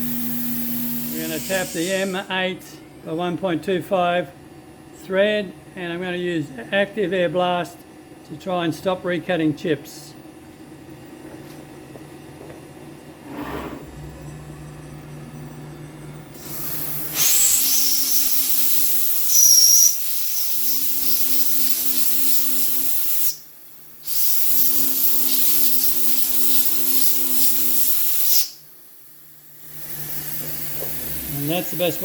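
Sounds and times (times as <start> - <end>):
compressed air hissing: 0.0 - 2.3, 16.3 - 28.6, 29.5 - 32.0
router spindle humming: 0.0 - 2.3, 29.6 - 32.0
high whistle: 16.4 - 21.1.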